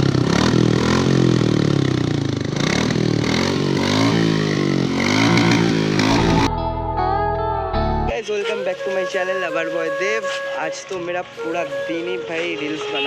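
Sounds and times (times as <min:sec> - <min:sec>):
motorcycle engine revving: 0:00.0 - 0:06.5.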